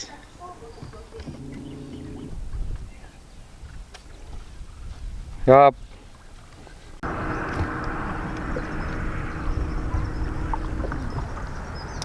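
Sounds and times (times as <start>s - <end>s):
faint steady hum: 0.0s - 3.4s, 7.0s - 12.0s
water rushing: 0.0s - 4.3s, 7.0s - 12.0s
outboard motor running: 0.0s - 4.5s, 7.0s - 12.0s.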